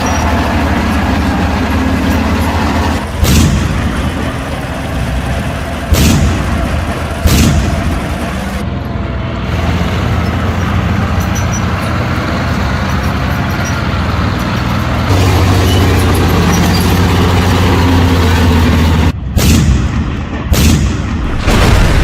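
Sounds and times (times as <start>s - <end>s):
low engine drone: 0.0s - 22.0s
loud blast: 3.0s - 4.5s, 5.6s - 8.2s, 19.3s - 22.0s.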